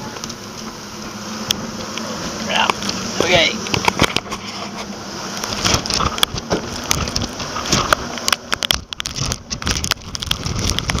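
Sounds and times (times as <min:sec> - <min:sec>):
wind buffeting microphone: 0:01.6 - 0:11.0
rain pattering on camera: 0:05.3 - 0:11.0.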